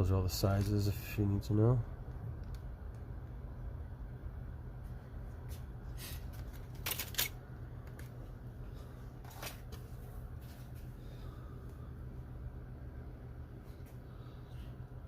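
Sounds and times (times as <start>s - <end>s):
steady low hum: 0.0s - 15.0s
rustling of tool packaging: 6.0s - 8.1s, 9.2s - 10.7s.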